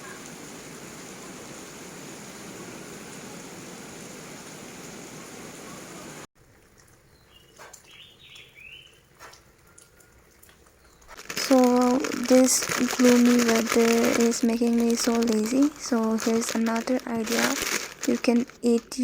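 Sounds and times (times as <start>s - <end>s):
steady rain falling: 0.0s - 6.3s, 7.3s - 19.0s
small birds chirping: 7.0s - 11.4s.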